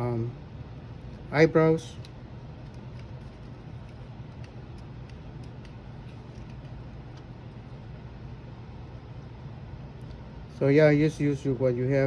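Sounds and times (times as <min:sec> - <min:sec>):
steady low hum: 0:00.0 - 0:12.0
light clicks of laptop parts: 0:01.8 - 0:07.8.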